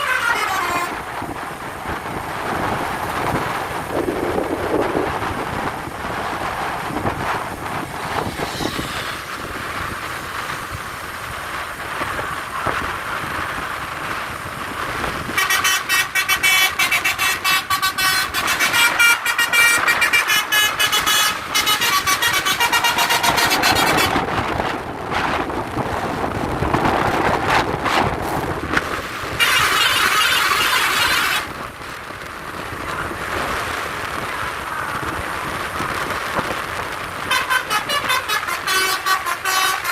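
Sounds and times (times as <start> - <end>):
multi-tone bus horn tune: 0.0 - 1.3, 15.2 - 24.4, 29.3 - 31.6, 37.2 - 39.9
road and engine noise: 0.0 - 39.9.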